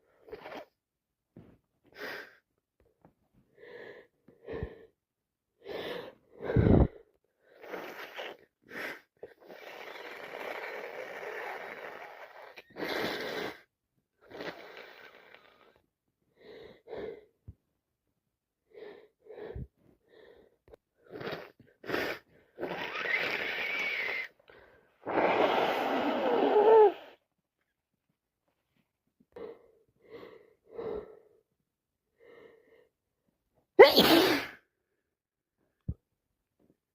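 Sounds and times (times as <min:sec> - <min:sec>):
person sneezing: 0:33.8 - 0:34.6.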